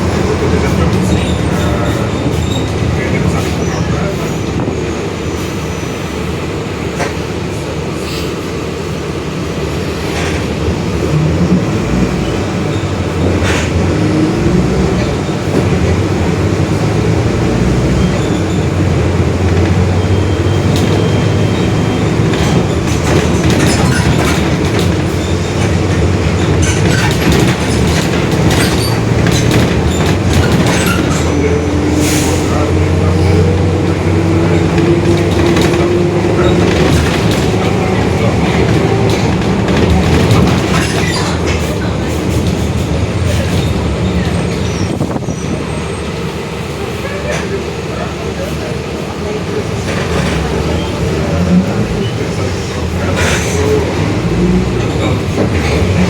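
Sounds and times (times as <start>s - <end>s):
diesel bus engine: 0.0s - 56.0s.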